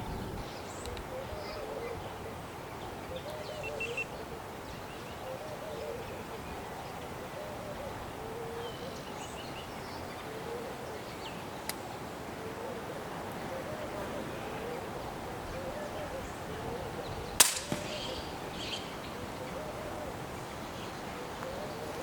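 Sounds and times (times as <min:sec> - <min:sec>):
doves cooing: 0:00.9 - 0:22.0
sharp click: 0:17.4 - 0:18.0.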